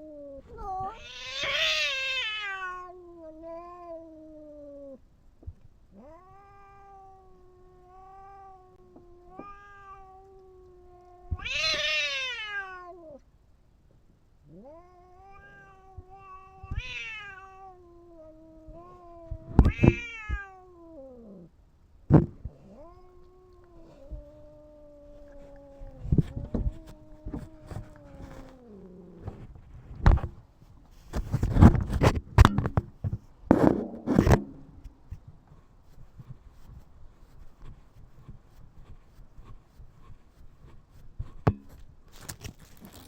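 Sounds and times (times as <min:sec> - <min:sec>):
cat yowling: 0:00.0 - 0:05.0, 0:06.0 - 0:13.2, 0:14.5 - 0:21.5
sharp knocks: 0:33.5 - 0:34.9.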